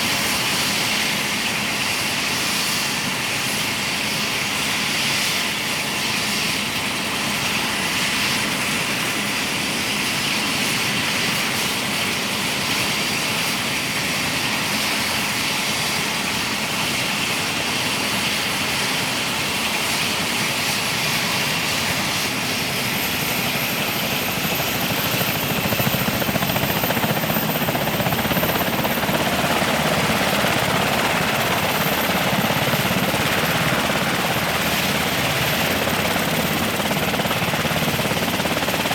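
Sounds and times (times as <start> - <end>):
helicopter turbine engines running: 0.0 - 38.9
high-pitched turbine whine: 9.6 - 38.9.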